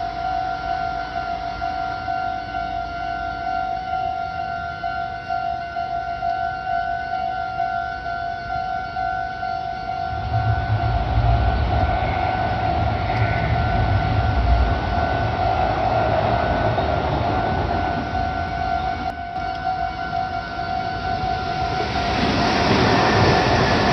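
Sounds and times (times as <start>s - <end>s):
level-crossing alarm two-tone clang: 0.0s - 11.0s, 17.5s - 22.0s
electric train rumble: 0.0s - 23.9s.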